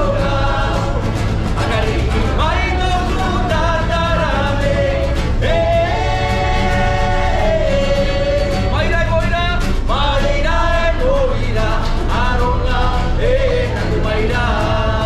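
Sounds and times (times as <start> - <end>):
instrumental accompaniment: 0.0 - 9.9.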